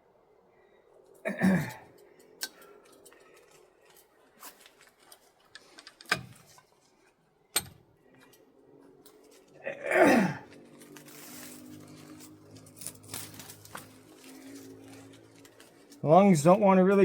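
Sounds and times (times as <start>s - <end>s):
person clearing throat: 1.2s - 1.9s, 9.6s - 10.5s
scrap metal clicking and tapping: 5.4s - 6.7s.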